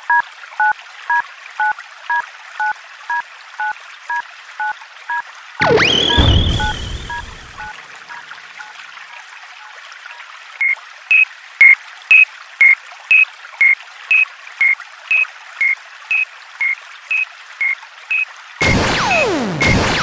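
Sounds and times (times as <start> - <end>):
level crossing alarm dings: 5.6 - 7.7
lower alternating tones: 5.6 - 7.7.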